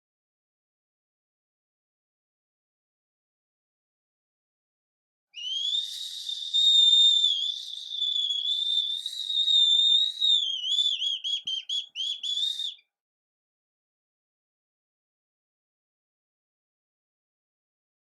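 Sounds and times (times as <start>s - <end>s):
whistle blowing: 5.4s - 12.8s
short whistle toots: 5.4s - 12.9s.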